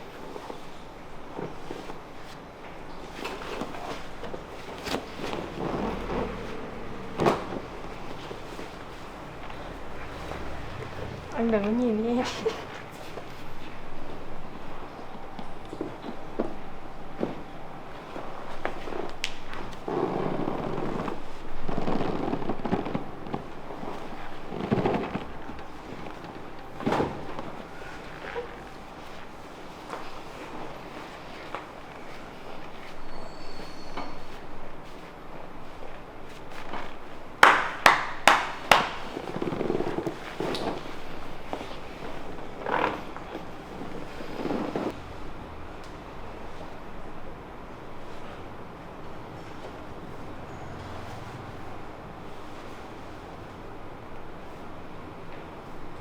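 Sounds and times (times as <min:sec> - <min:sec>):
hands massaging a back: 0:00.0 - 0:45.0.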